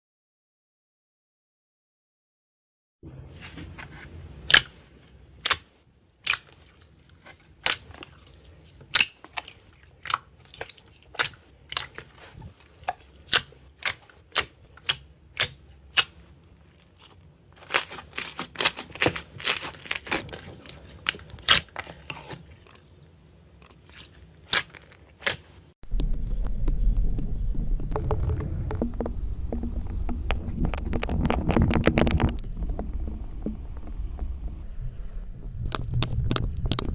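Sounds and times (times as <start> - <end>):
steady low sound: 25.8 - 36.9.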